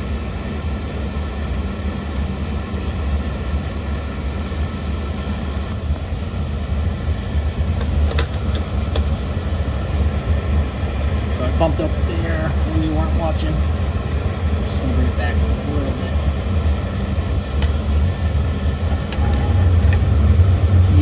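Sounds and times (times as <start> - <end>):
oil burner rumbling: 0.0 - 21.0.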